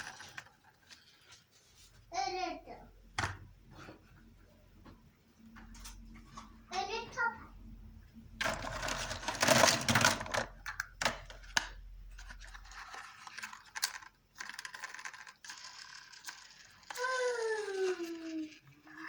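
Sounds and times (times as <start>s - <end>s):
toy clicks and rattles: 8.4s - 11.6s, 12.2s - 19.0s.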